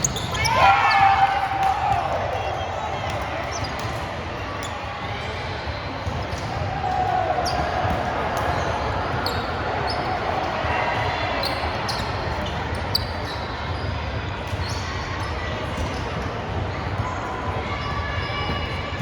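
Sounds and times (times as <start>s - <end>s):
sneakers squeaking on court: 0.0s - 1.3s, 2.5s - 5.0s, 7.4s - 16.2s.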